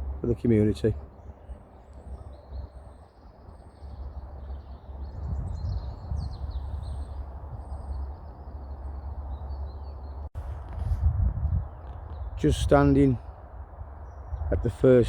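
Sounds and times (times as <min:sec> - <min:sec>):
small birds chirping and singing: 0:00.3 - 0:10.3.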